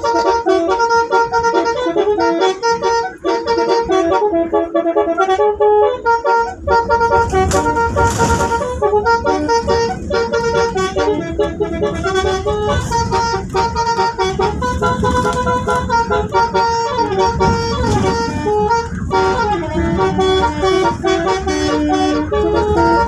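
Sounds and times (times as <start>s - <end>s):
multi-tone air horns playing melody: 0.0s - 23.0s
low rumble: 6.7s - 23.0s.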